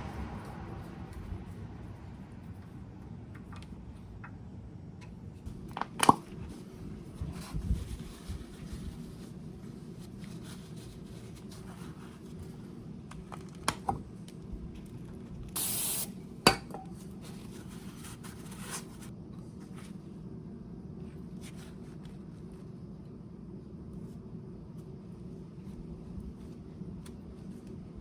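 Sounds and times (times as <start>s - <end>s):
steady low hum: 0.0s - 28.0s
aerosol spray hiss: 15.6s - 16.1s.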